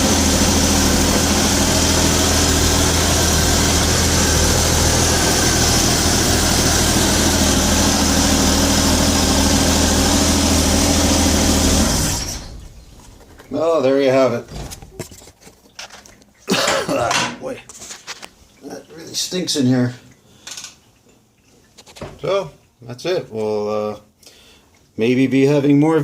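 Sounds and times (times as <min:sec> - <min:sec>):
van engine idling: 0:00.0 - 0:13.8.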